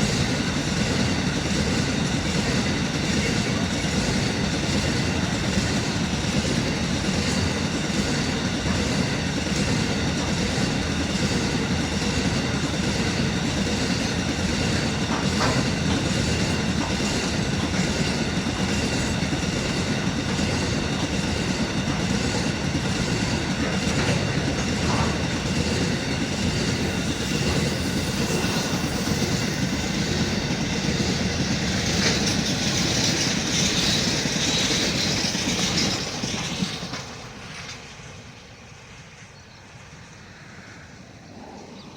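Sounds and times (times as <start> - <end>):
wheels clacking over rail joints: 0.0 - 39.6
train wagons rumbling: 0.0 - 41.9.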